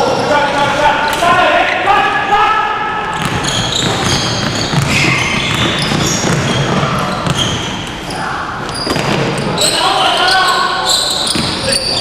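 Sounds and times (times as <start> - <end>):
basketball bouncing: 3.1 - 7.7, 8.7 - 9.5, 11.3 - 11.6
sneakers squeaking on court floor: 3.1 - 12.0.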